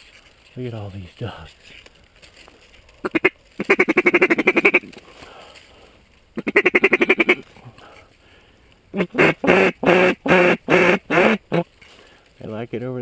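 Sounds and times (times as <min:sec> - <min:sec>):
duck call chattering quacks: 0:03.0 - 0:04.9, 0:06.4 - 0:07.4, 0:08.9 - 0:11.7.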